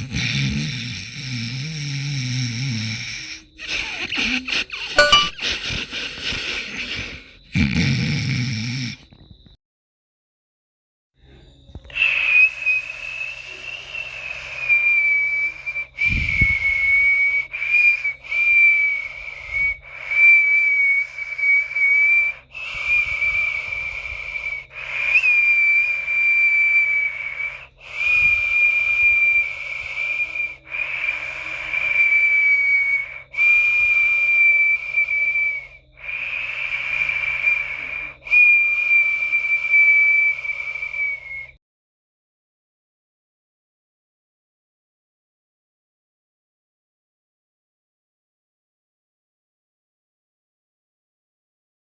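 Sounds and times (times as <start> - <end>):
whistling snore with hiss: 0.0 - 4.9, 5.6 - 9.4, 11.2 - 41.6.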